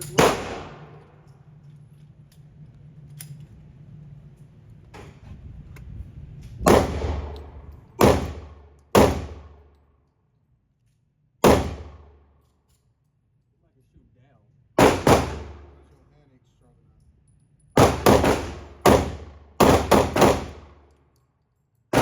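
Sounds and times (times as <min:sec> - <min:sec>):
handgun shots echoing: 0:00.0 - 0:01.2, 0:14.8 - 0:15.9.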